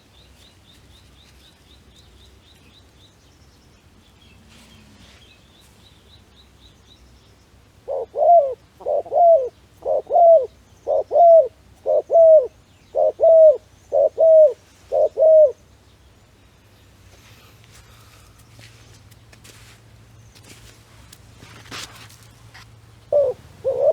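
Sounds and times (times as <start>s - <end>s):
dove cooing: 7.8s - 15.6s, 23.0s - 23.9s.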